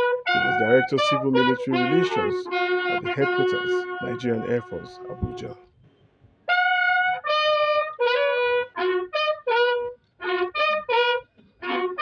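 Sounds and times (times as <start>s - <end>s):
solo bugle call: 0.0s - 5.4s, 6.5s - 12.0s.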